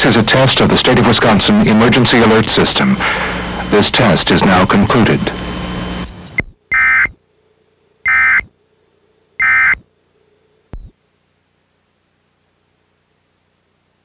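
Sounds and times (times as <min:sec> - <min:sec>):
buzzy digital tone bursts: 0:00.2 - 0:06.1.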